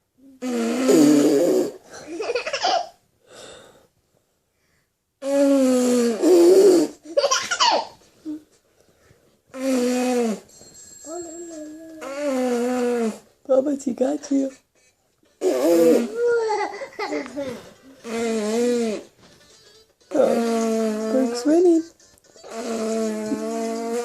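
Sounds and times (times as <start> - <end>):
children blowing raspberries: 0.4 - 2.0, 5.2 - 7.1, 9.5 - 10.5, 11.1 - 13.3, 15.4 - 19.3, 20.2 - 21.5, 22.4 - 24.0
children giggling: 16.4 - 18.0.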